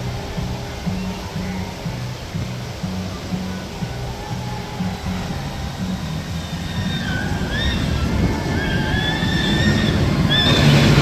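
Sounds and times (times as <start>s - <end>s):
high wavering squeals: 0.0s - 11.0s
roller coaster rumbling: 0.0s - 11.0s.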